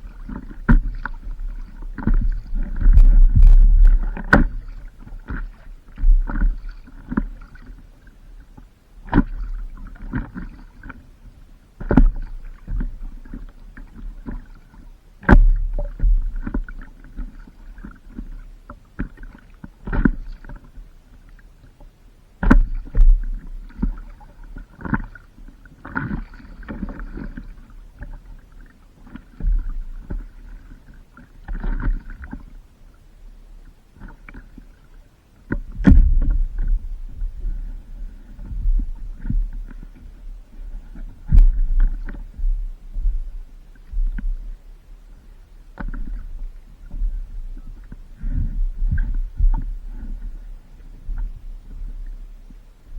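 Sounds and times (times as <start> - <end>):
paddle splashes with thump: 0.0 - 7.8, 22.4 - 32.6, 34.0 - 44.5.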